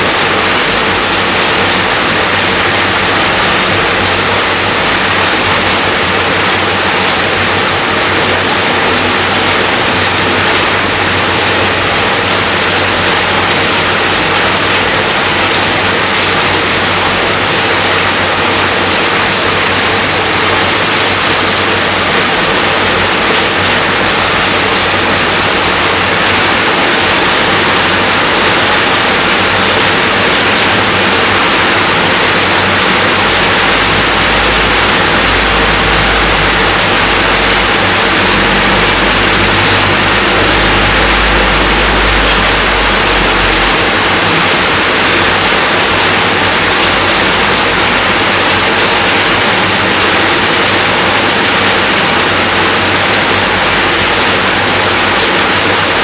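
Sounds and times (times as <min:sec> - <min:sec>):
steady rainfall: 0:00.0 - 0:56.0
low rumble: 0:33.1 - 0:45.0.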